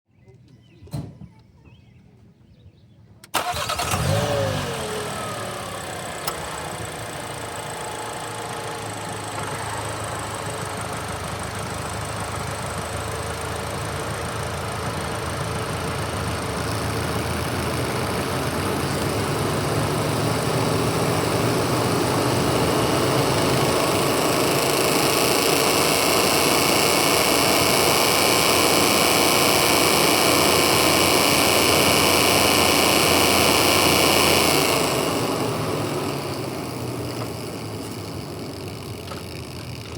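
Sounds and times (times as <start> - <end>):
car engine starting and idling: 3.2 - 39.9.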